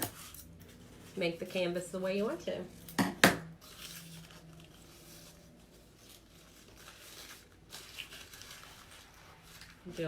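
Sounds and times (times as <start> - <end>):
materials rustling on a table: 2.6 - 10.0.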